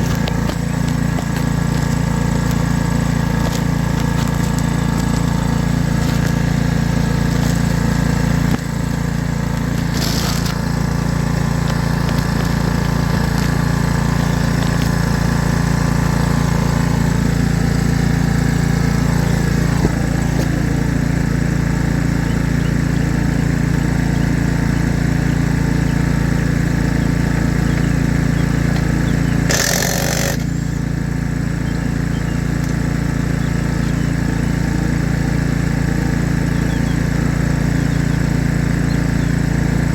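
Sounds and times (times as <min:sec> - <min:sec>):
diesel engine idling: 0:00.0 - 0:39.9
short bursts of noise: 0:09.6 - 0:15.0, 0:29.4 - 0:30.5.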